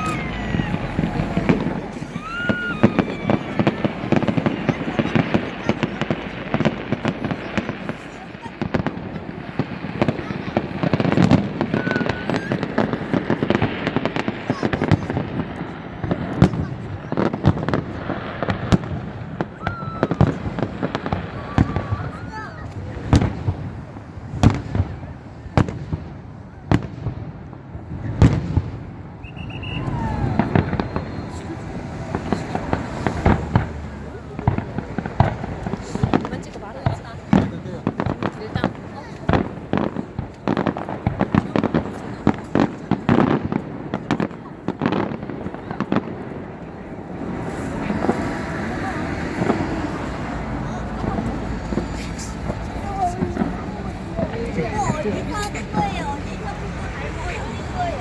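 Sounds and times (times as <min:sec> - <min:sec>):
low rumble: 0:00.0 - 0:06.5
fireworks bangs and crackling: 0:00.0 - 0:58.0.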